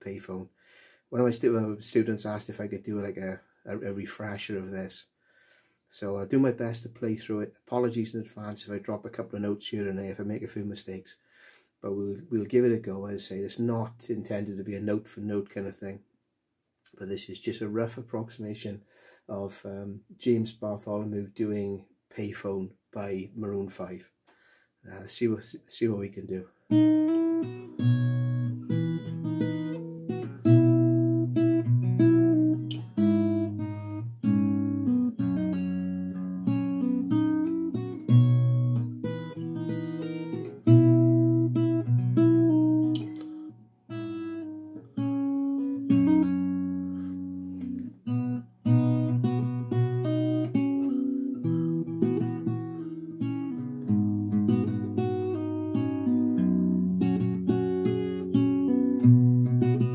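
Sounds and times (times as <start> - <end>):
fingerstyle acoustic guitar: 26.7 - 59.9.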